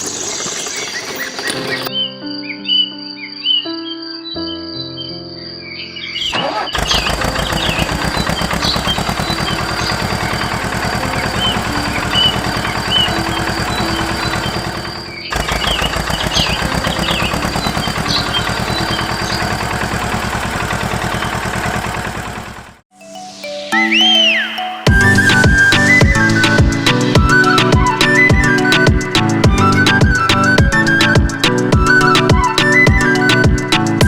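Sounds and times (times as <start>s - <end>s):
small engine running: 0.0s - 1.9s, 6.4s - 22.8s
birds chirping: 0.0s - 20.1s, 23.0s - 34.0s.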